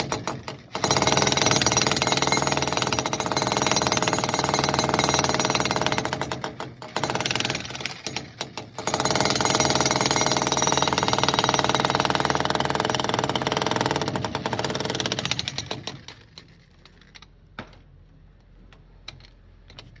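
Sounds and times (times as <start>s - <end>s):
jackhammer pounding: 0.0s - 16.0s.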